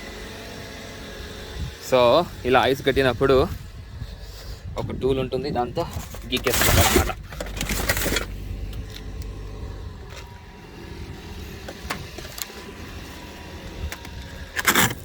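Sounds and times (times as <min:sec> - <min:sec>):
car engine idling: 0:05.8 - 0:14.9
ice scraper rasping on ice: 0:14.0 - 0:15.0
ice clicking and cracking: 0:14.6 - 0:15.0.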